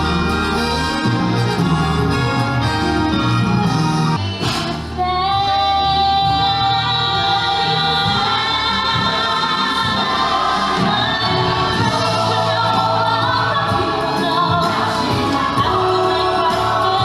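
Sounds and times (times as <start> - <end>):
orchestral backing music: 0.0 - 17.0
voices holding sung notes: 6.2 - 17.0.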